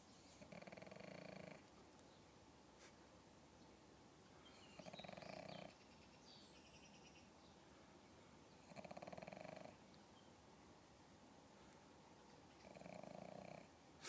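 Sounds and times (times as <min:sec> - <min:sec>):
dog snoring: 0:00.2 - 0:01.7, 0:04.7 - 0:05.8, 0:08.6 - 0:09.8, 0:12.6 - 0:13.7.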